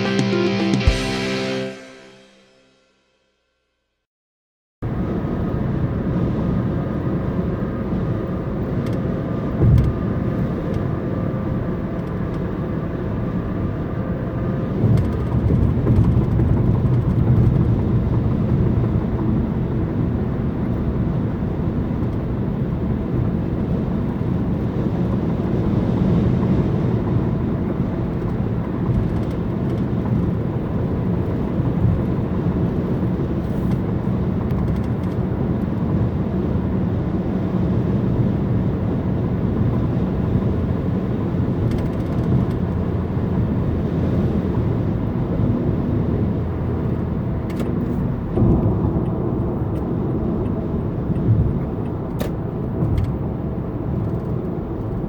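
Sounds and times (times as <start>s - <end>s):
strong wind: 4.8s - 55.0s.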